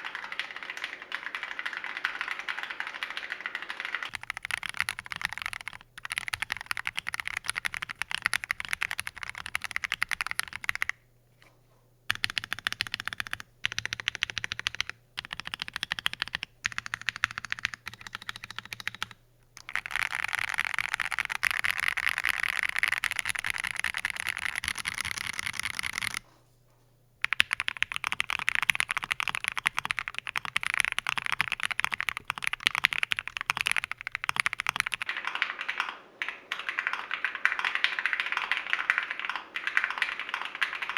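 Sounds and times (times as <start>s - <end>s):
mechanical keyboard typing: 0.0s - 11.0s, 12.1s - 26.2s, 27.2s - 40.9s.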